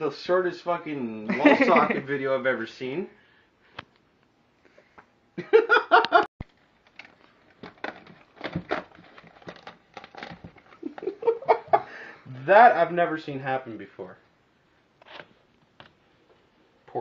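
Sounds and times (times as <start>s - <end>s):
crunching and crackling clicks: 6.4s - 11.1s
rustling: 6.5s - 11.8s.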